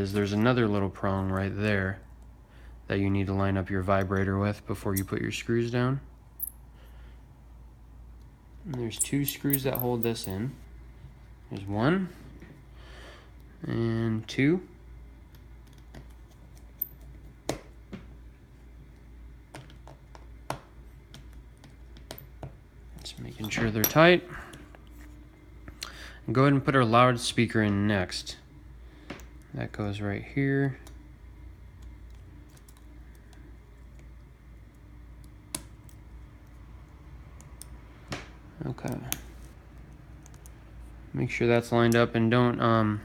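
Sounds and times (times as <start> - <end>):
low steady hum: 0.0 - 43.0
small parts clicking and tapping: 31.8 - 36.6.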